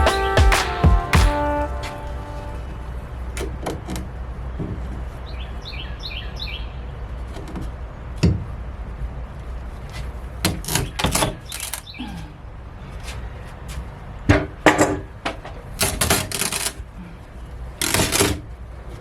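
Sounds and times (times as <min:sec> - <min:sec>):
bird chirping: 0:05.2 - 0:07.0.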